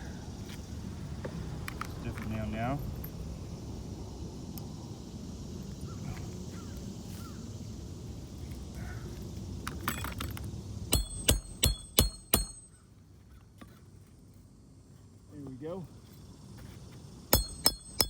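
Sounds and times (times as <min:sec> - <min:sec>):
hammer striking metal: 0:10.9 - 0:12.7, 0:17.3 - 0:18.0.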